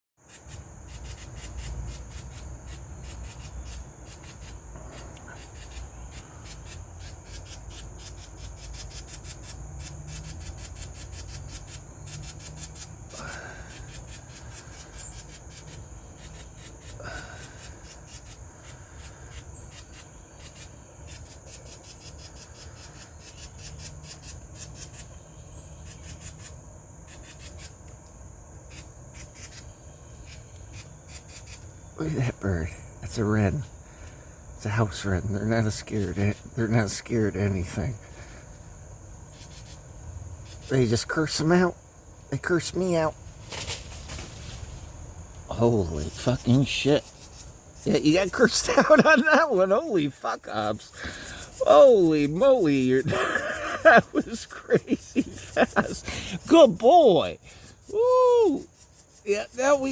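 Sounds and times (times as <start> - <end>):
high insect buzz: 0.2 - 59.9
wren harsh rasping chatter: 0.2 - 59.9.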